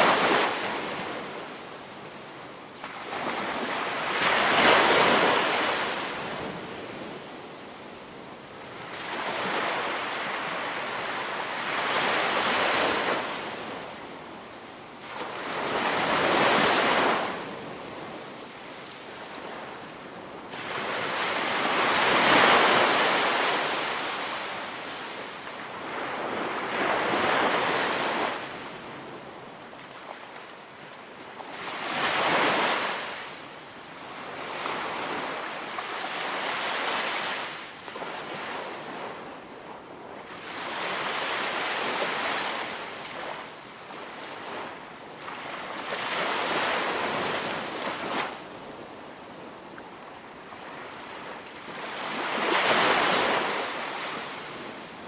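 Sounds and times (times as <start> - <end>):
wind: 0.0 - 55.0
ocean waves breaking on beach: 19.2 - 30.4, 40.0 - 55.0.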